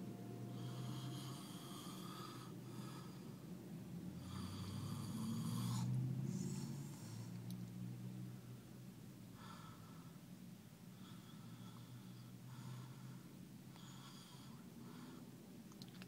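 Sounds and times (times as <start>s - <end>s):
man snoring: 0.5s - 3.2s, 4.1s - 7.2s.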